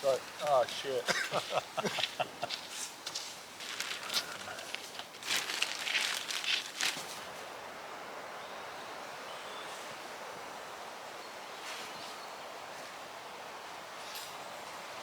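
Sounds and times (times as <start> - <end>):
crackly rustles: 0.0 - 7.5
wind rushing through trees: 0.0 - 15.0.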